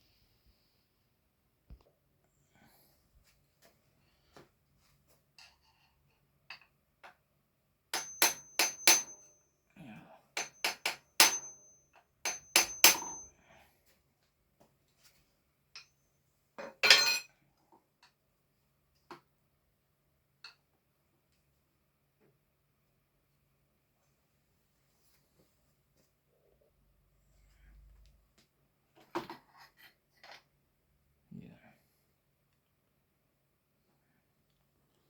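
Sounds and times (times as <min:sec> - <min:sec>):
hammer striking metal: 0:08.0 - 0:09.3, 0:10.4 - 0:13.3.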